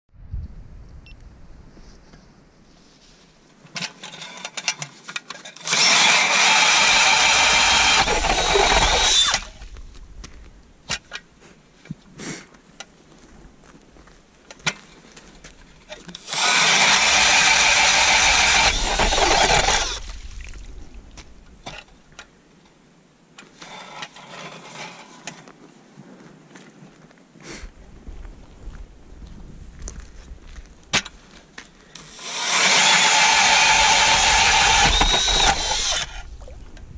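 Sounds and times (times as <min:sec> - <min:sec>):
drill auger whining into ice: 0:05.5 - 0:09.8, 0:16.1 - 0:20.1, 0:31.9 - 0:36.4.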